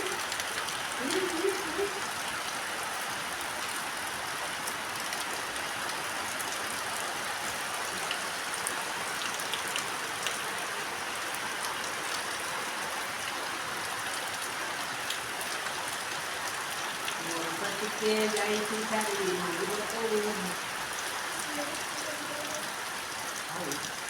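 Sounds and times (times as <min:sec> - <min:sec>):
raindrops ticking: 0:00.0 - 0:03.8, 0:15.0 - 0:24.0
steady rain hiss: 0:00.0 - 0:24.0.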